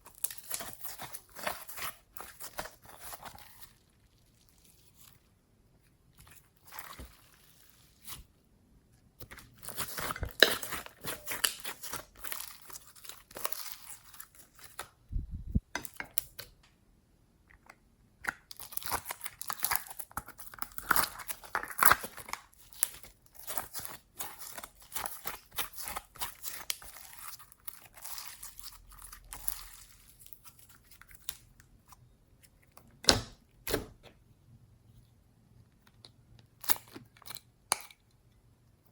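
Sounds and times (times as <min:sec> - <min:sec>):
slime squished by hand: 0:00.0 - 0:05.3, 0:06.1 - 0:08.4, 0:18.3 - 0:31.6.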